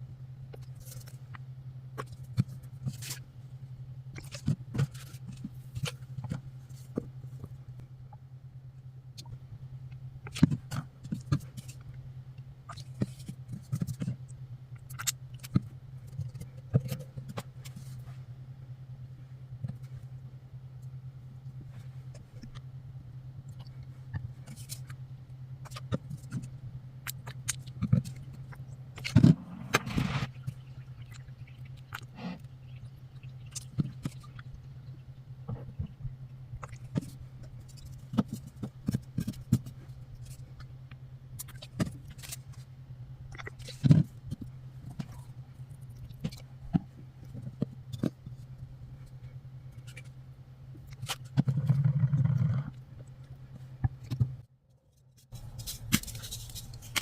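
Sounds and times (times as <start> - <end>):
steady low hum: 0.0 - 57.0
small objects being handled: 54.9 - 57.0
scraping rustle: 55.2 - 57.0.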